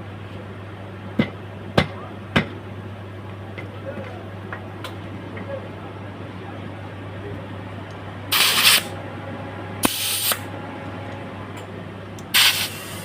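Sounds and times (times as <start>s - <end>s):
steady low hum: 0.0s - 13.0s
compressed air hissing: 8.3s - 8.9s, 9.8s - 10.4s, 12.3s - 13.0s.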